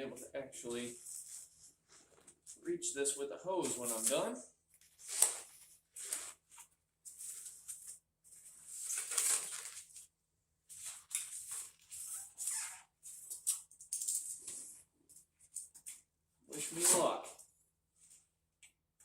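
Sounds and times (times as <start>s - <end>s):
rustling and scraping: 0.6s - 2.7s, 3.6s - 10.1s.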